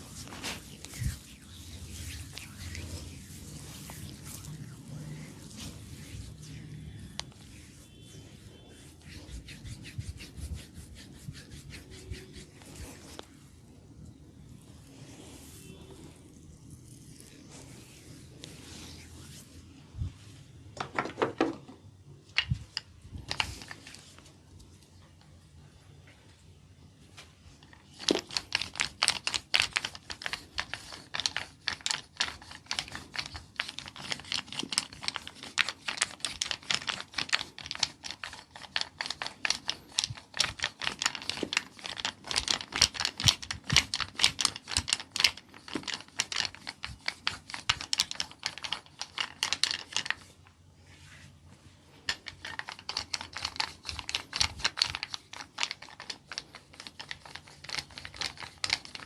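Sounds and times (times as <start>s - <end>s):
crisp clicks and taps from massage: 27.2s - 50.4s.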